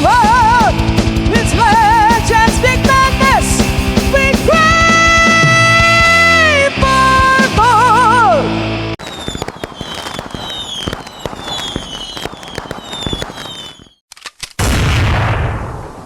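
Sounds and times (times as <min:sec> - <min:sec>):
falling firework whistles: 0:09.0 - 0:14.0
fireworks crackling and popping: 0:09.0 - 0:14.1.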